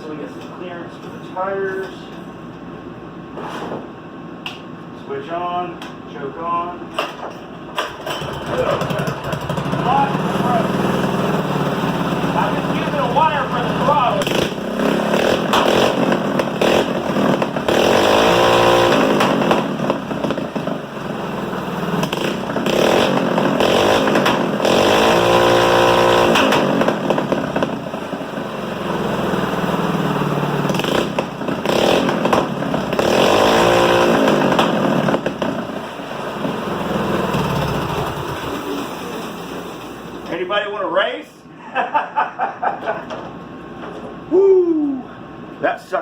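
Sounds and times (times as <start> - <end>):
small engine revving: 8.2 - 39.4.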